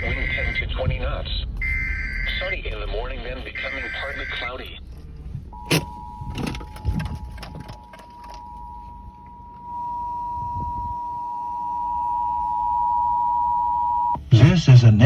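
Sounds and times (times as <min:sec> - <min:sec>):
two-tone alert signal: 0:01.6 - 0:02.6.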